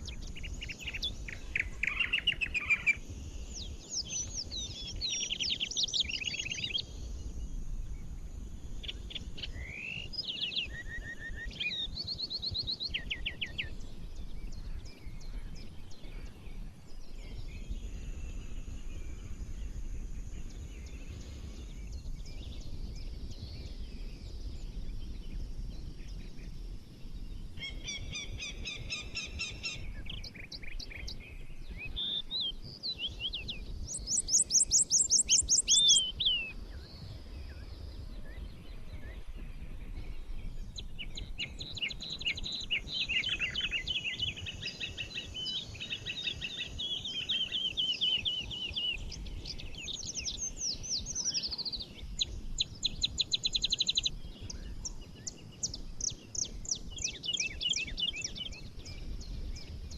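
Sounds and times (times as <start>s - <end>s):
birds singing and chirping: 0.0s - 59.9s.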